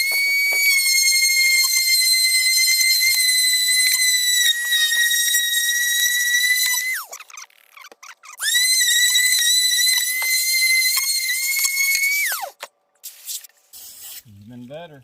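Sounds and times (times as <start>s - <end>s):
power sander motor whine: 0.0s - 7.1s.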